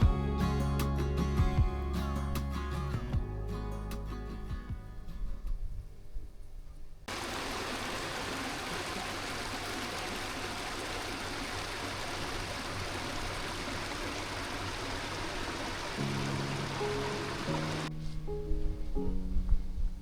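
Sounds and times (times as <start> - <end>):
steady rushing noise: 7.1 - 18.0.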